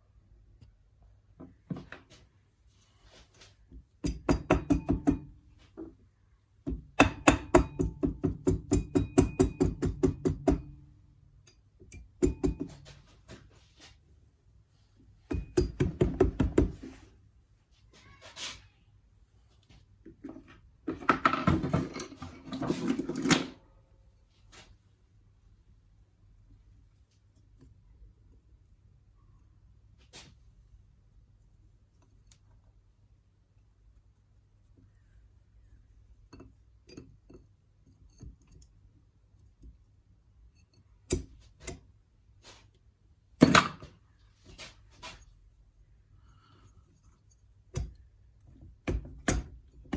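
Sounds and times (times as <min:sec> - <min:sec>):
tools and engine parts clattering: 0:20.3 - 0:23.6.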